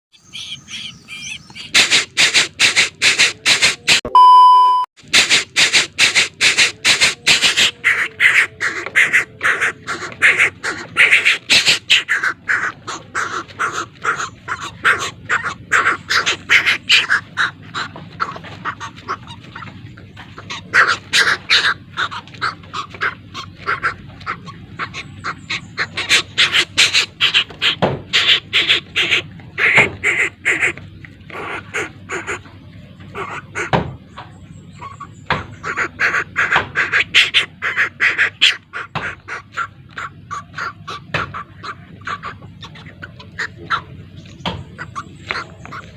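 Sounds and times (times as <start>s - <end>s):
bird chick begging calls: 0.1s - 32.5s, 33.1s - 45.9s
electronic beep: 4.0s - 4.9s.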